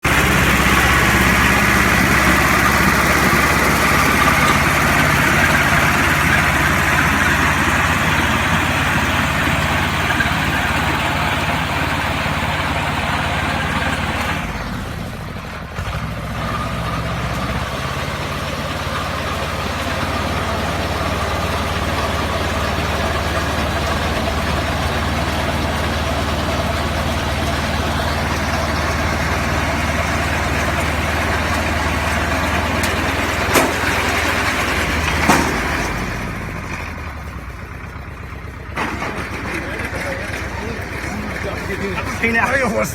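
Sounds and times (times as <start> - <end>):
tractor engine running: 0.0 - 42.9.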